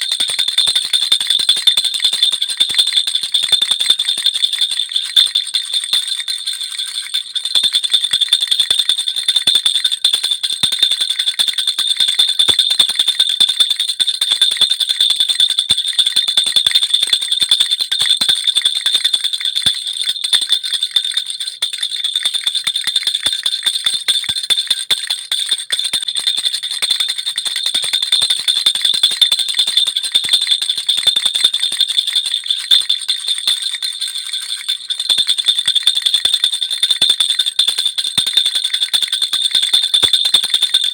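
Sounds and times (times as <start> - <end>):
baby rattle jingling: 0.0 - 9.4, 18.6 - 36.4.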